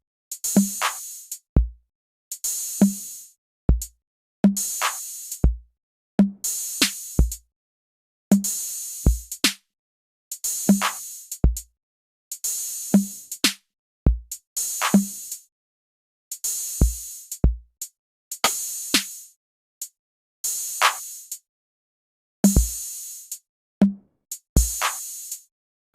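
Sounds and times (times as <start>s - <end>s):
drum machine loop: 9.1s - 9.5s, 22.5s - 22.9s, 24.6s - 25.1s.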